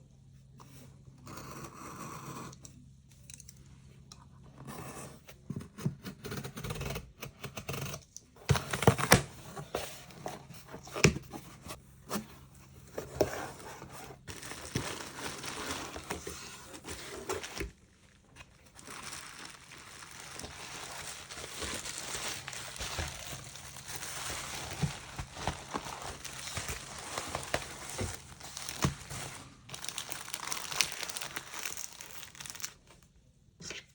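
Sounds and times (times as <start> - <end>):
paper and plastic crinkling: 8.5 - 33.1.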